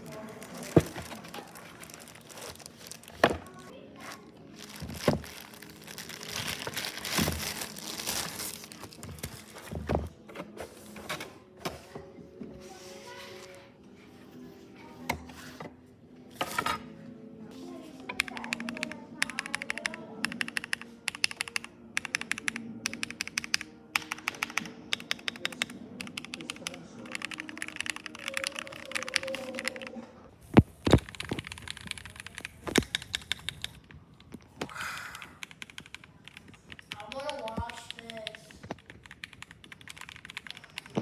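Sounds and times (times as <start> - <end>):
mechanical keyboard key clicks: 18.2 - 29.9.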